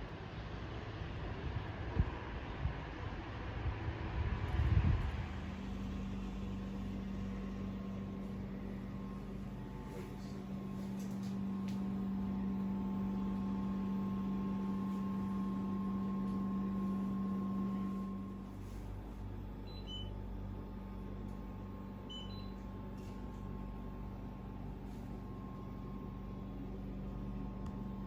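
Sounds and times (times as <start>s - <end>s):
steady electrical hum: 0.0s - 28.0s.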